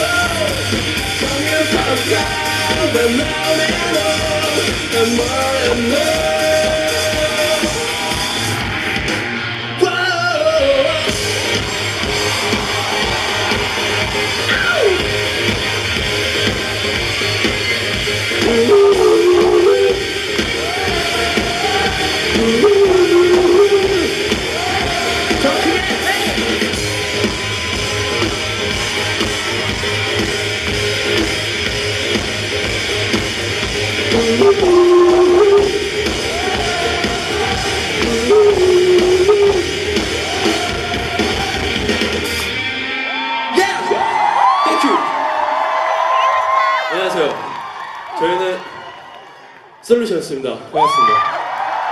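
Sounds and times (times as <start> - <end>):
person singing: 0.0 - 7.9, 18.4 - 26.4, 34.0 - 41.6
rock band playing live: 0.0 - 46.7.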